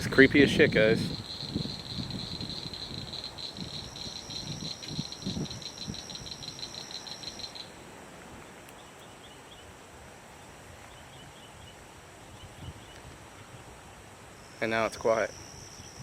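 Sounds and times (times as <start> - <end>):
insects trilling: 0.1 - 7.8, 14.3 - 16.0.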